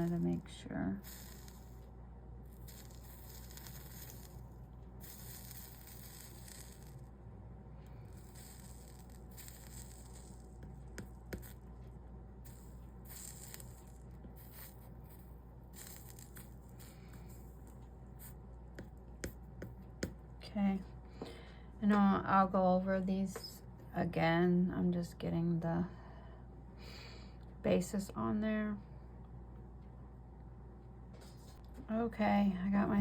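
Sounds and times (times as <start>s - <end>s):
soldering iron hissing and sizzling: 1.0s - 7.1s, 8.1s - 11.8s, 12.4s - 19.4s.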